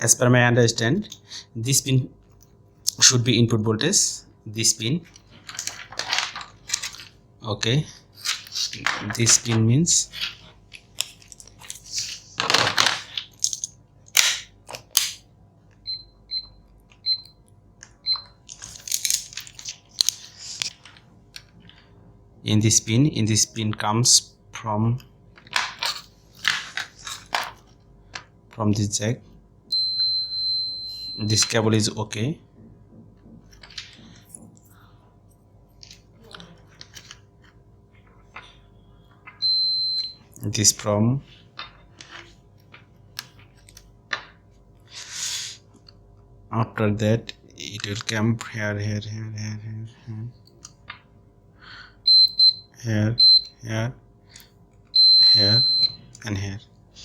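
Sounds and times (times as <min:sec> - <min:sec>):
low steady hum: 0:00.0 - 0:57.0
clicks and rustles of handling: 0:05.0 - 0:07.2
short high multimeter beeps: 0:29.7 - 0:31.5, 0:39.4 - 0:40.2, 0:52.0 - 0:53.6, 0:55.0 - 0:56.1.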